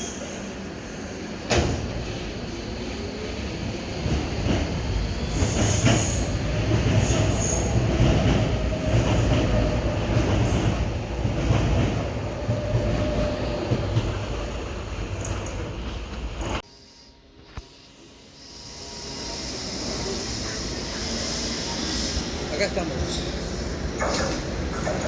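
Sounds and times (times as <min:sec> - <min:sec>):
train wheels rumbling: 0:00.0 - 0:16.6.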